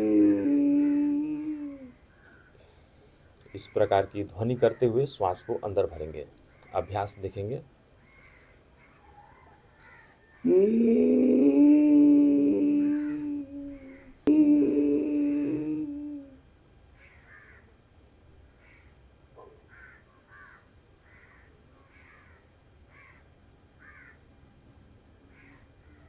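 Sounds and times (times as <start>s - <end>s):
faint bird calls: 0.0s - 2.8s, 3.4s - 5.8s, 8.0s - 10.9s, 12.5s - 16.3s, 17.0s - 17.7s, 18.6s - 24.2s, 25.3s - 26.0s
throat breathing drone: 0.0s - 3.3s, 10.4s - 16.4s.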